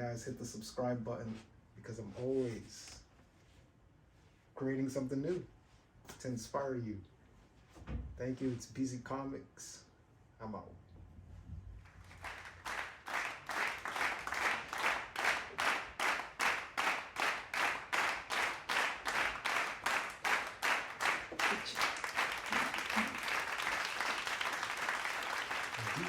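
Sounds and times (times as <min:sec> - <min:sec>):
applause: 0:11.9 - 0:26.0
rhythmic clapping: 0:11.9 - 0:26.0.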